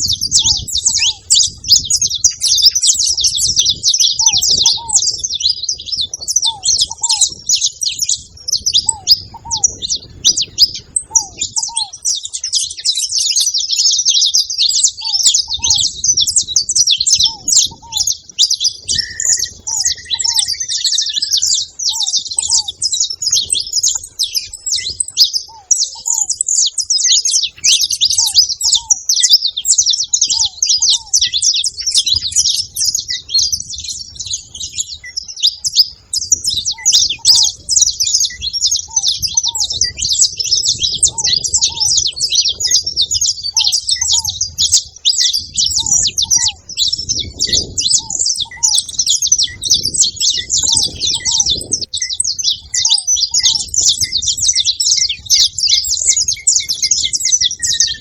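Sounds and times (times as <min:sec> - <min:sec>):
finches chirping: 0:00.0 - 0:58.0
short bird whistle: 0:18.8 - 0:21.6.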